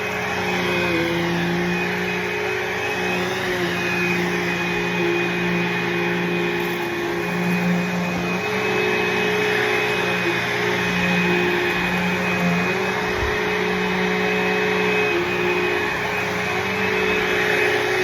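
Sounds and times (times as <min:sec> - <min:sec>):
vacuum cleaner running: 0:00.0 - 0:18.0.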